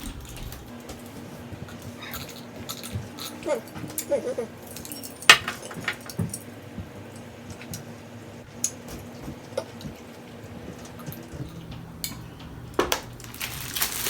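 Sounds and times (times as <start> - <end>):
plastic packaging rustling: 12.6 - 14.0.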